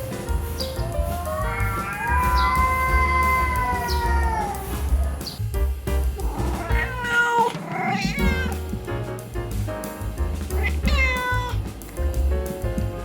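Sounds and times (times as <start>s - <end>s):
background music with beat: 0.0s - 13.0s
cat meowing: 0.8s - 5.4s, 6.2s - 8.6s, 10.6s - 11.6s.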